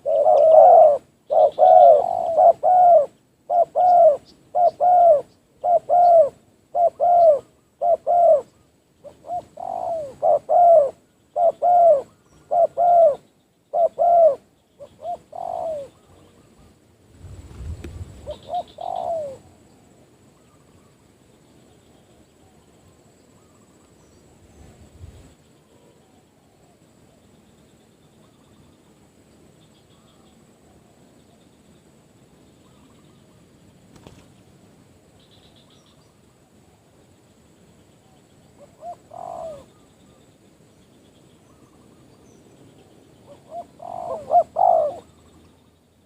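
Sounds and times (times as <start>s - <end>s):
dove cooing: 0.0s - 16.6s, 18.2s - 19.6s, 38.6s - 39.8s, 43.2s - 45.2s.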